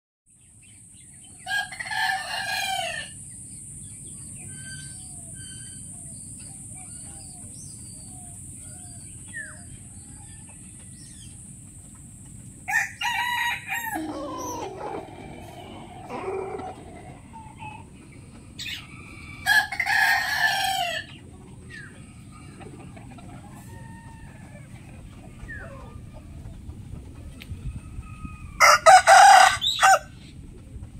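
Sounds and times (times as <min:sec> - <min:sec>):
chicken clucking and calls: 0:00.9 - 0:30.9
rooster crowing: 0:01.4 - 0:03.2, 0:12.7 - 0:17.9, 0:18.8 - 0:21.1, 0:27.9 - 0:30.1.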